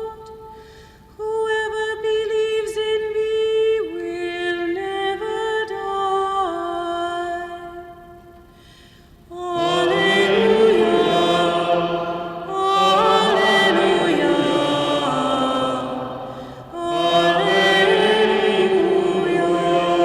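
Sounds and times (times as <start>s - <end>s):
solo voice singing chant: 9.3s - 20.0s
group of voices chanting: 9.6s - 20.0s.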